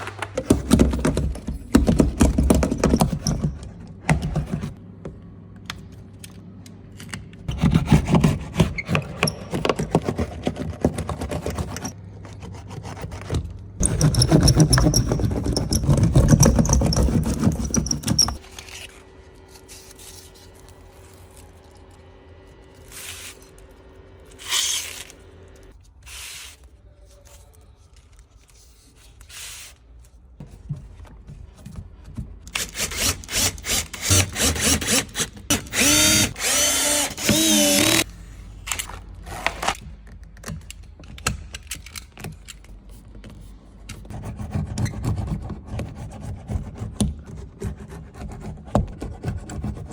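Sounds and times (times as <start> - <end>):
power drill running: 32.6 - 38.1.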